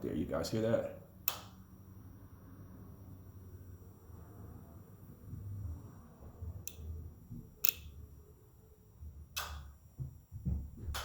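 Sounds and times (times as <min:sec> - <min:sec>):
sharp electrical clicks: 0:00.5 - 0:01.8, 0:06.6 - 0:08.1, 0:09.3 - 0:09.8.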